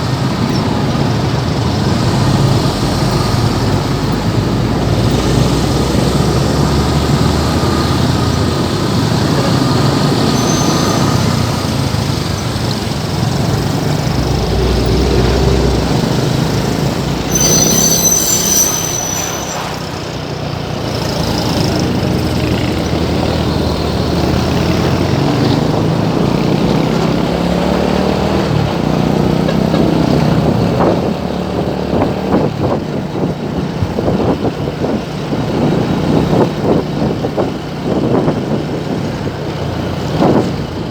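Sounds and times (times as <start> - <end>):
traffic engines running: 0.0 - 40.9
high-pitched squeal: 0.5 - 12.2, 12.9 - 21.4.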